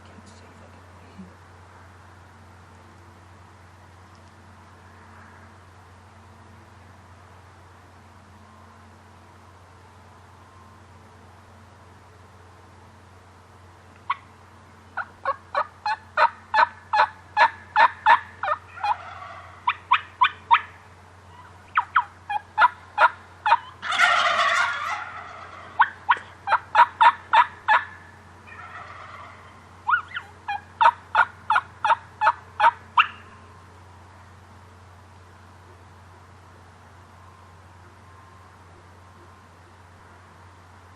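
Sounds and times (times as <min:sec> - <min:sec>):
turkey yelping: 0:14.1 - 0:14.3, 0:15.0 - 0:33.3
turkey gobble: 0:15.0 - 0:33.3.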